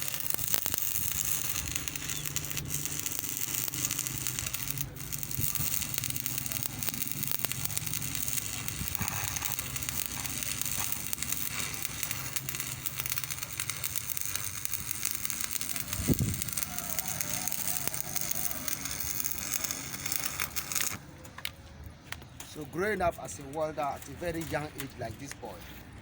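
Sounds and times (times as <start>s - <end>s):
welding arc crackling and sizzling: 0.0s - 21.1s, 22.8s - 25.6s.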